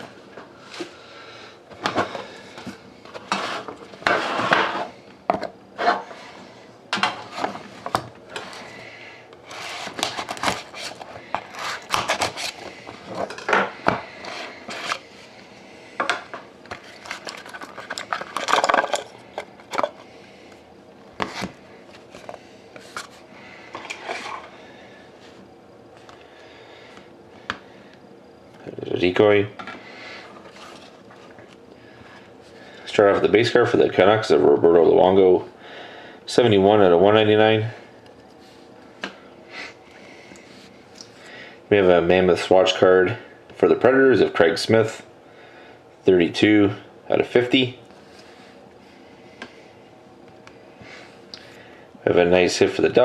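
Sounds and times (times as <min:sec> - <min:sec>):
cards rustling and sliding: 0:09.4 - 0:13.2, 0:21.2 - 0:23.2.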